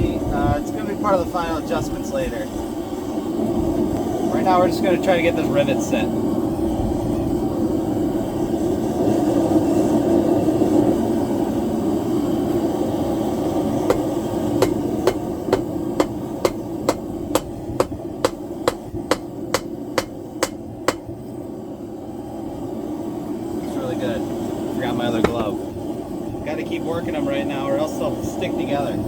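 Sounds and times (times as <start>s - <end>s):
hammer striking rivet: 13.9s - 21.1s.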